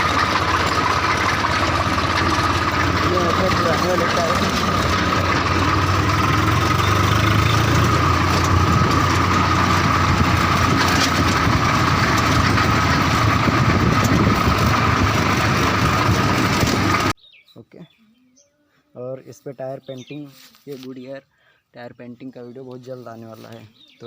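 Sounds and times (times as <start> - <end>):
tractor diesel engine idling: 0.0 - 17.2.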